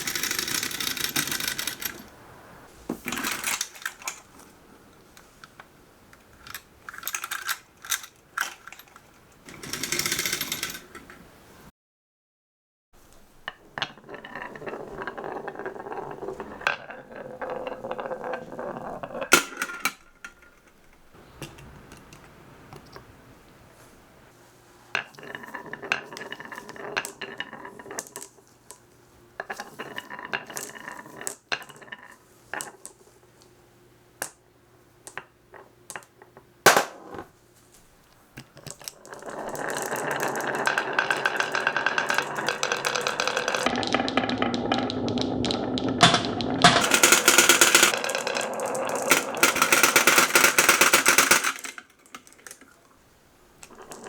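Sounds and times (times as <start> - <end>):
marbles rolling on wooden tracks: 0.0 - 2.2, 6.3 - 11.2, 13.3 - 23.0, 25.0 - 28.8, 29.4 - 33.0, 38.6 - 52.9, 53.5 - 54.0.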